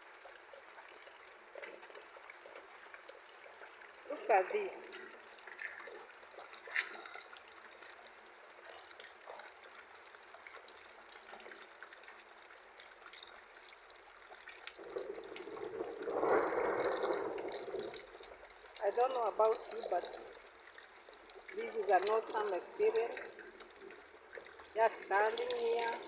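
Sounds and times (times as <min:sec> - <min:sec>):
water drips: 0:00.0 - 0:26.0
water pouring into a tank: 0:00.0 - 0:26.0
heavy rain: 0:14.7 - 0:20.5, 0:24.6 - 0:26.0.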